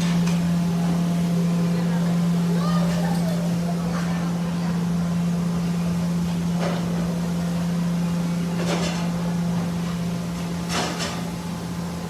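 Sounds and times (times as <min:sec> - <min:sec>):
low mechanical hum: 0:00.0 - 0:12.0.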